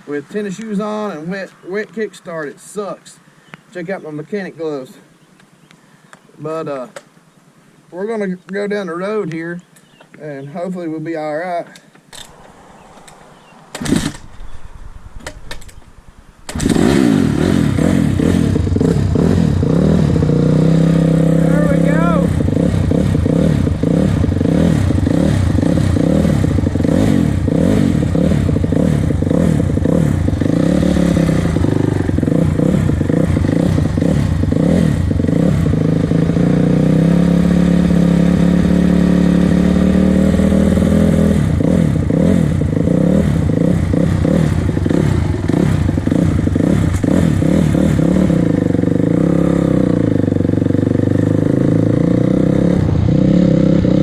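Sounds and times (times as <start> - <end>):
dirt bike engine revving: 12.2 - 15.8, 16.4 - 54.0.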